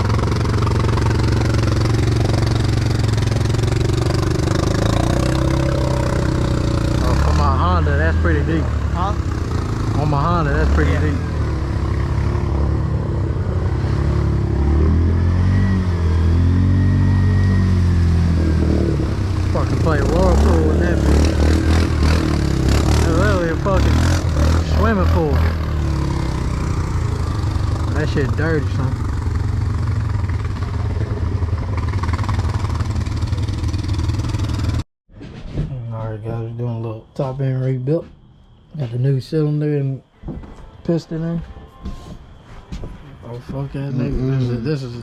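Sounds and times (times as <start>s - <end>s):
atv engine under throttle: 0.0s - 34.8s.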